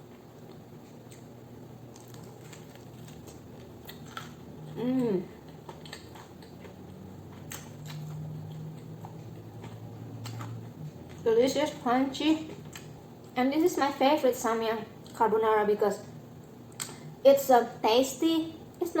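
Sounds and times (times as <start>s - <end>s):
chewing crunchy food: 0.0s - 13.4s, 16.0s - 17.1s
person humming: 4.8s - 5.4s.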